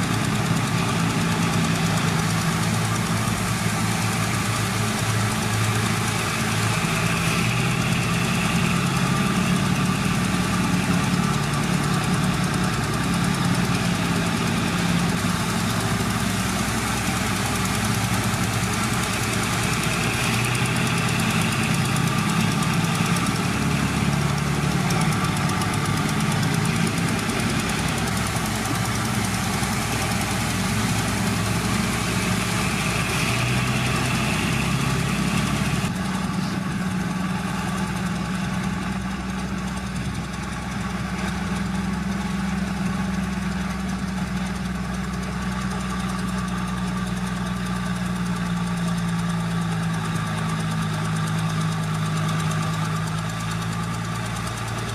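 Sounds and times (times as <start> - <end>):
heavy diesel engine running: 0.0 - 54.9.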